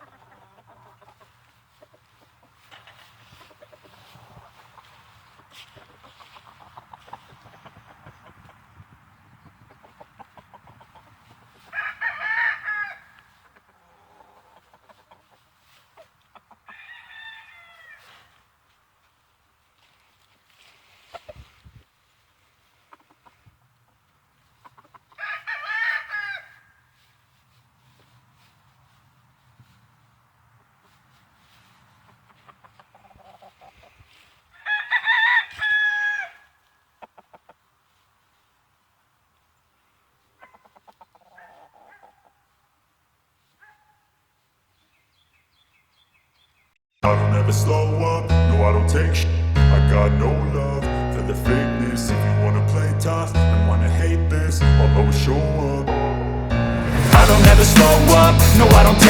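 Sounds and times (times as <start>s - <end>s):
chicken clucks: 0.0s - 18.4s, 21.0s - 21.7s, 22.6s - 26.6s, 30.8s - 38.0s, 40.2s - 42.5s
rooster crowing: 11.7s - 13.3s, 16.7s - 18.1s, 25.2s - 26.8s, 34.6s - 36.6s.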